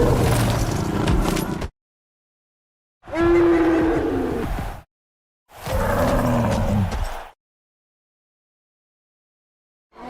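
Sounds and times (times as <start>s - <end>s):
deep animal roar: 5.6s - 6.8s.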